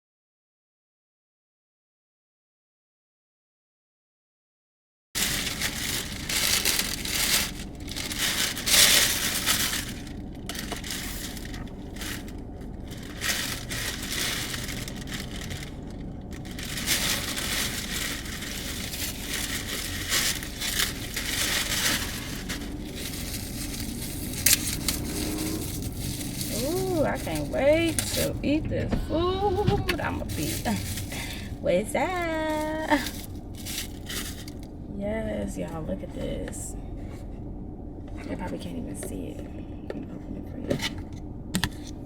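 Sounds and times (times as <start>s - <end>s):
rustling and crinkling handling: 5.2s - 34.8s.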